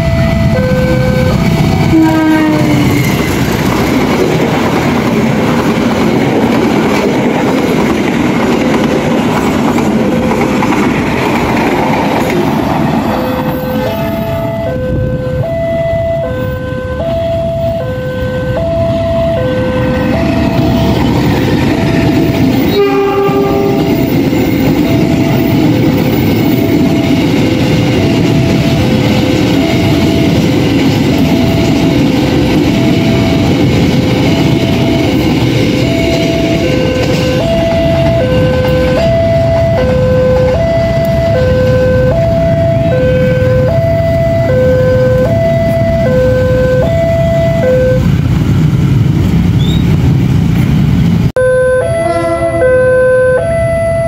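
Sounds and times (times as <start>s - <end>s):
level crossing two-tone alarm: 0.0s - 2.2s, 13.1s - 48.1s, 51.4s - 54.0s
train horn blast: 0.0s - 3.0s, 13.1s - 15.5s, 22.6s - 24.2s, 35.9s - 39.1s, 39.8s - 43.8s, 44.5s - 48.1s, 51.4s - 54.0s
train rumbling past: 0.0s - 54.0s.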